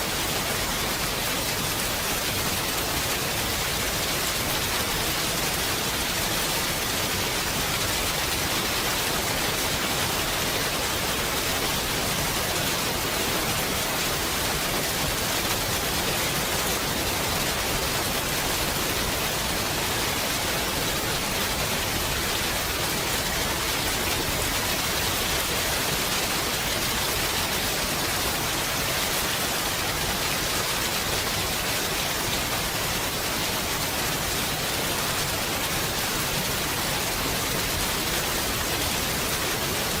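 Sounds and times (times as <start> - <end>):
steady rain in forest: 0.0 - 40.0.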